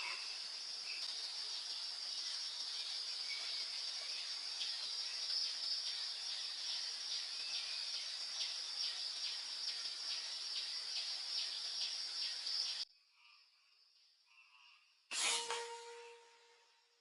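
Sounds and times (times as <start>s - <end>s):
insects chorus buzzing: 0.0s - 12.8s.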